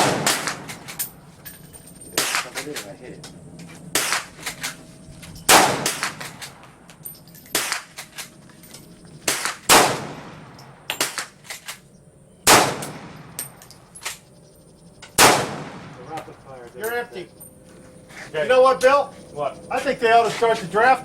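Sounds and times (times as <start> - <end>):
rifle shots echoing: 0.0 - 1.2, 2.2 - 2.6, 3.9 - 4.8, 5.5 - 6.8, 7.5 - 8.3, 9.2 - 11.8, 12.4 - 14.2, 15.1 - 16.5.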